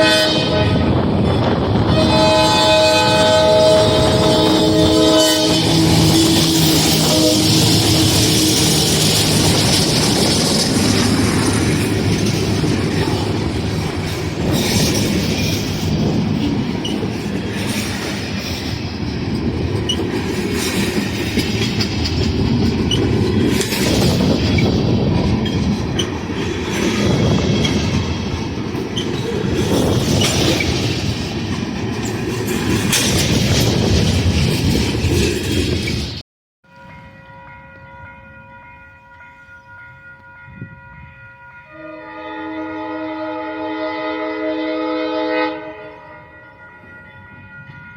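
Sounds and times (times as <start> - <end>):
freight train wheels clattering: 3.1 - 36.2.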